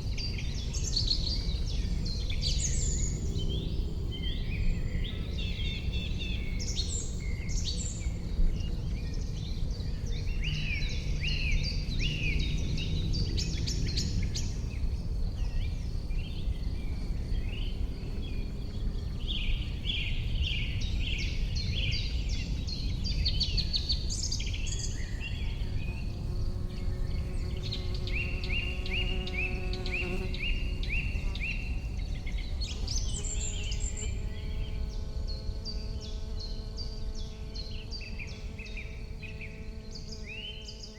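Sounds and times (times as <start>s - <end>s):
small birds chirping: 0.0s - 40.9s
insect buzzing: 23.0s - 40.9s.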